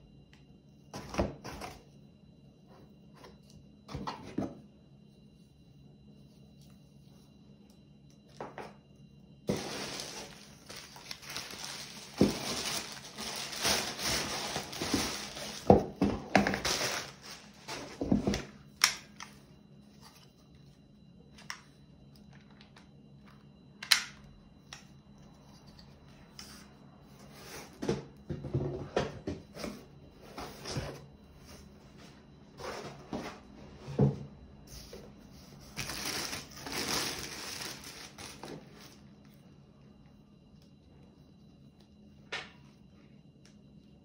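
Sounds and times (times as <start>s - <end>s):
packaging crinkling and tearing: 9.5s - 15.7s, 16.5s - 17.6s, 35.7s - 39.0s.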